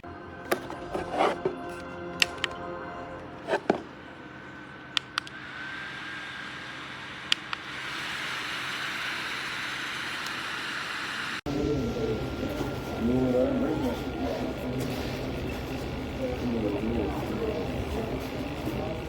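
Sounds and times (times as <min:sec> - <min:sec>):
fan motor whine: 0:02.3 - 0:19.0
fan air rushing: 0:03.5 - 0:19.0
fan switch clicks: 0:05.0 - 0:05.4.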